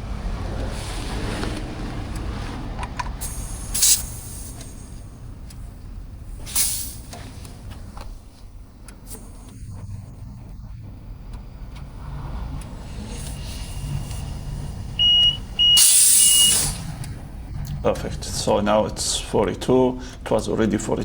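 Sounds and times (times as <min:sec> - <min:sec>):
steady low rumble: 0:00.0 - 0:21.0
tyre inflator air hiss: 0:03.2 - 0:05.2, 0:06.4 - 0:08.3, 0:12.7 - 0:17.1
short sharp air bursts: 0:03.2 - 0:05.7, 0:06.3 - 0:08.4, 0:12.7 - 0:17.2.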